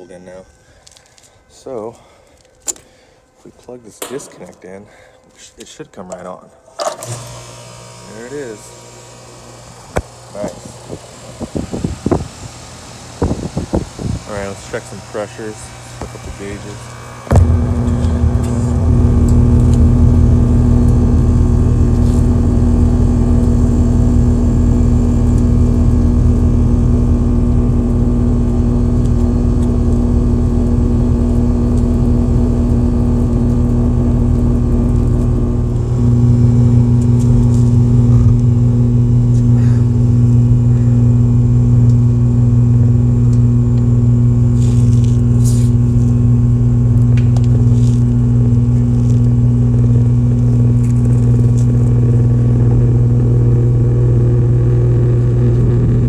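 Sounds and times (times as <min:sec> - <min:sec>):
air conditioner hum: 0:03.2 - 0:47.0.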